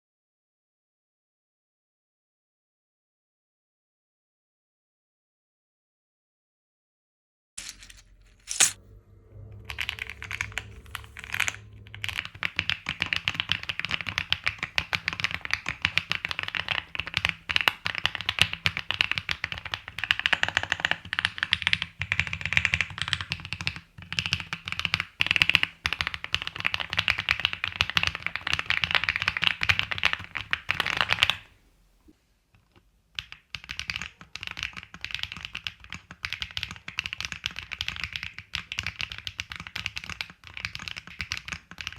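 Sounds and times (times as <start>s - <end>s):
clacky mechanical keyboard typing: 9.7s - 31.5s, 33.2s - 41.9s.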